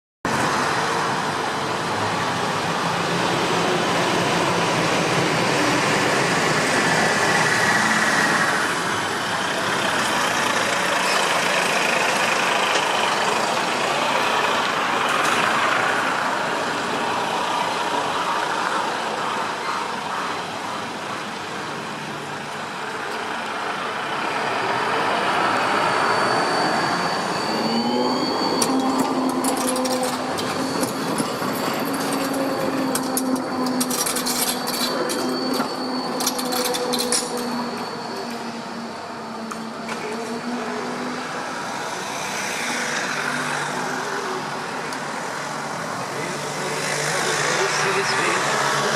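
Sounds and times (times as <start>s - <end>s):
large vehicle running: 0.3s - 48.9s
high squealing tones: 24.7s - 44.8s.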